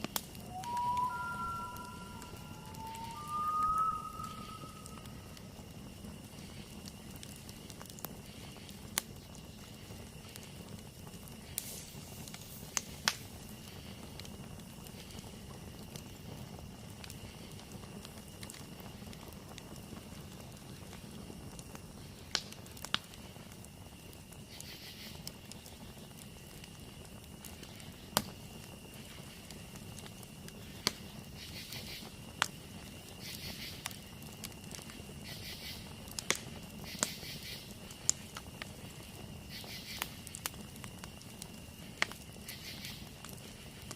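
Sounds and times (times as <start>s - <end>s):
campfire crackling and popping: 0.0s - 43.9s
pulsed insect calls: 0.3s - 5.7s
high insect trill: 0.3s - 7.1s.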